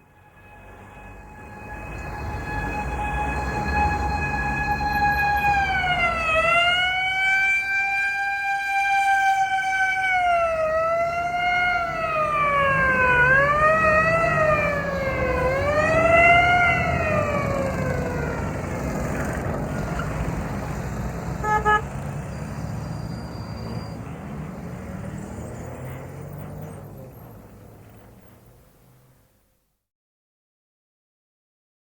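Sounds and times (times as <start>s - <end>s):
ambulance siren passing: 0.0s - 28.6s
engine and tyre rumble: 0.0s - 29.7s
short horn toot: 21.4s - 22.0s.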